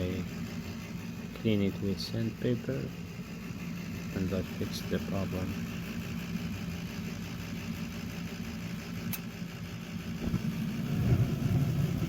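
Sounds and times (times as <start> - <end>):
gas furnace humming: 0.0 - 12.0
sharp click: 9.1 - 9.3.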